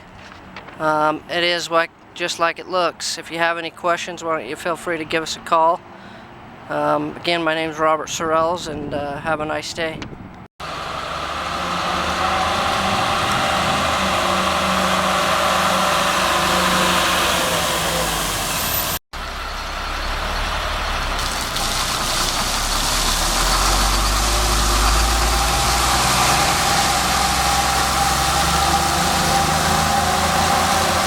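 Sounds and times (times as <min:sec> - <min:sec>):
diesel truck engine running: 0:10.6 - 0:31.0.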